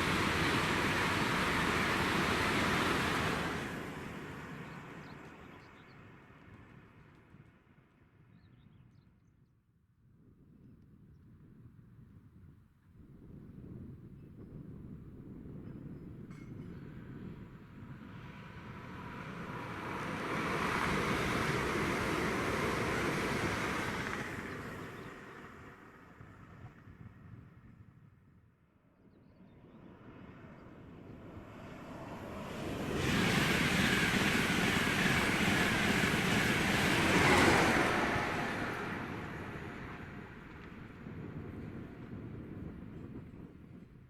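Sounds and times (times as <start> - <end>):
train passing at speed: 0.0 - 7.4, 15.6 - 26.8, 29.8 - 43.9.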